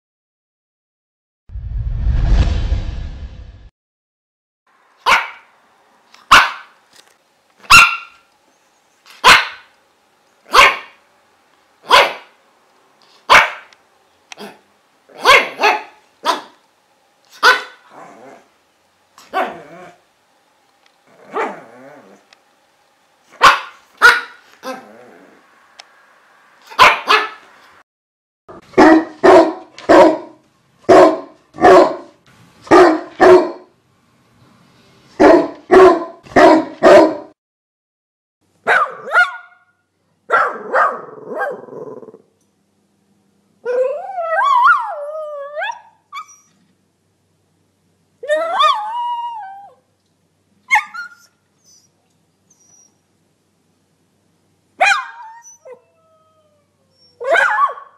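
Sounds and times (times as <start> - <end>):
dog barking: 5.0 - 5.5, 6.3 - 6.8, 7.6 - 8.2, 9.2 - 9.7, 10.5 - 11.0, 11.8 - 12.4, 13.3 - 13.8, 14.4 - 16.6, 17.4 - 17.9, 19.3 - 19.6, 21.3 - 21.6, 23.4 - 24.8, 26.7 - 27.5, 28.6 - 33.7, 35.2 - 37.4, 38.6 - 39.7, 40.3 - 41.7, 54.8 - 55.6, 57.2 - 57.9
dog yipping and whining: 7.6 - 8.2, 15.2 - 16.6, 17.4 - 18.4, 21.2 - 22.2, 43.6 - 46.7, 48.2 - 49.8, 50.7 - 53.0, 54.8 - 57.9.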